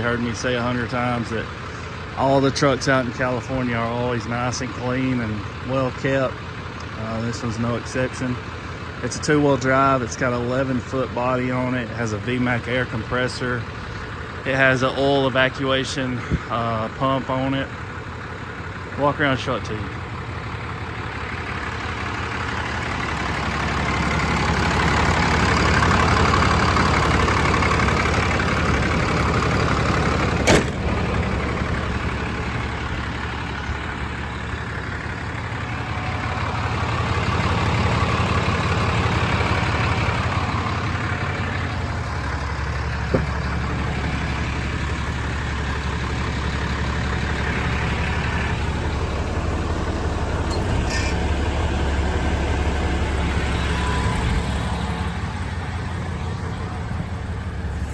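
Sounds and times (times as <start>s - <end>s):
diesel engine idling: 0.0s - 57.9s
sharp click: 30.4s - 31.0s.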